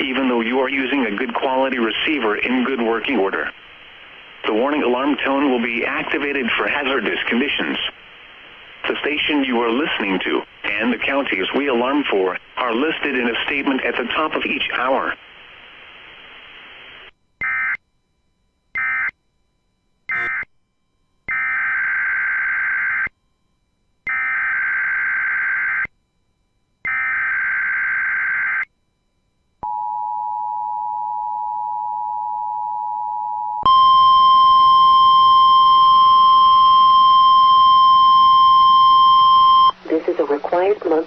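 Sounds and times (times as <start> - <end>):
single-pitch warning alarm tone: 17.3 - 20.5
two-tone attention signal: 20.1 - 20.5.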